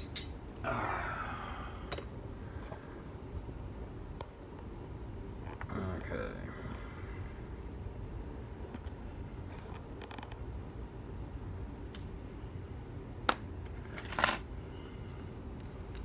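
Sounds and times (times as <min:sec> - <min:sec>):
metal tools clicking: 0:13.3 - 0:14.4
ringing metallic clink: 0:13.3 - 0:14.4.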